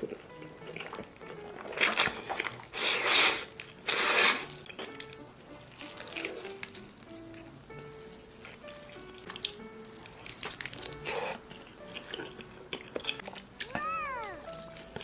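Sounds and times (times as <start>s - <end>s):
chewing and mouth clicks: 0.0s - 5.1s, 8.5s - 15.0s
soft background music: 0.0s - 15.0s
loud slurping of noodles: 2.7s - 4.6s.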